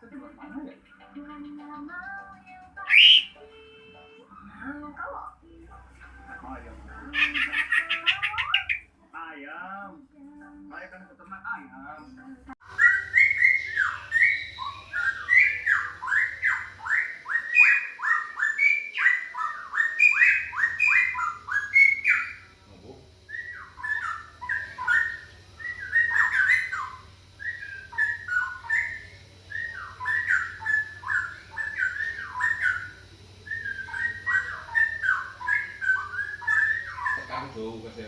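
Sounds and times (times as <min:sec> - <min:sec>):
faint steady hum: 0:00.0 - 0:38.0
bird song whistled notes: 0:02.8 - 0:04.5, 0:12.0 - 0:22.5, 0:23.3 - 0:37.8.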